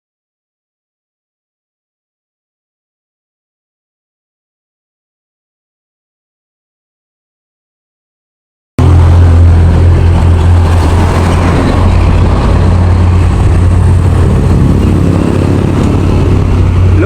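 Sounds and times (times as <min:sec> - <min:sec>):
road and wind noise: 0:08.8 - 0:17.0
vehicle low rumble: 0:08.8 - 0:17.0.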